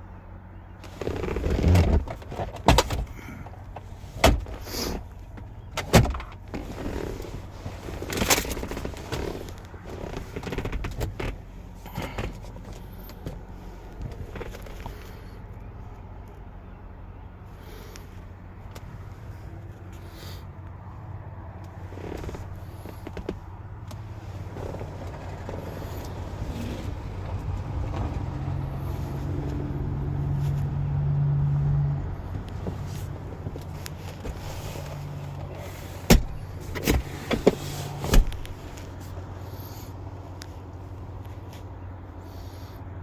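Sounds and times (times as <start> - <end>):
low motor hum: 0.0 - 43.0.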